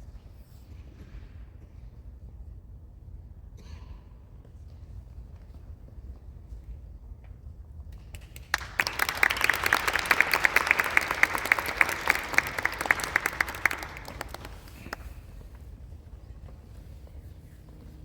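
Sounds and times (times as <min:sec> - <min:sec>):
audience applauding: 0:08.2 - 0:15.2.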